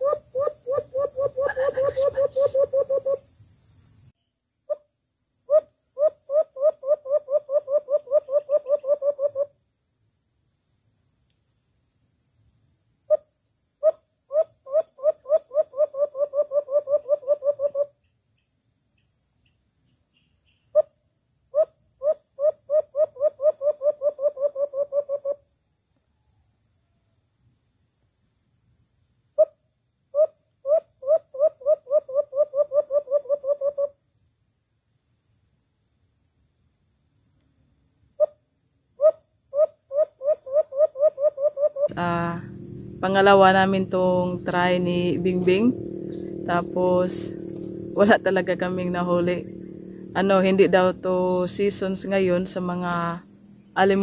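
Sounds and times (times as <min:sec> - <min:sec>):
dove hooting: 0:00.0 - 0:03.3, 0:05.5 - 0:09.5, 0:13.8 - 0:17.9, 0:21.6 - 0:25.4, 0:30.2 - 0:33.9, 0:39.0 - 0:54.0
high insect whine: 0:00.0 - 0:54.0.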